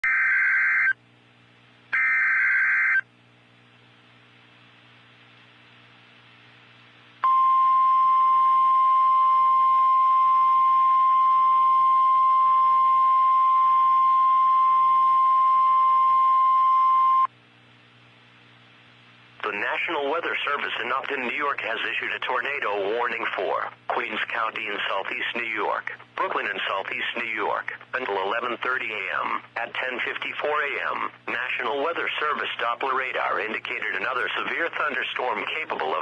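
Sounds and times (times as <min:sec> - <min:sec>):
steady warning alarm tone: 0:00.0 - 0:01.0, 0:02.0 - 0:03.0
faint radio hiss: 0:00.9 - 0:07.3, 0:17.3 - 0:36.0
warbling digital header tones: 0:02.0 - 0:03.0.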